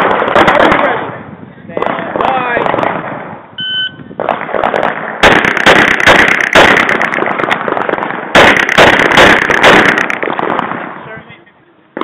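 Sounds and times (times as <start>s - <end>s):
rapid pistol shots: 0.0s - 3.4s, 4.2s - 11.0s
shot timer beep: 3.6s - 4.1s.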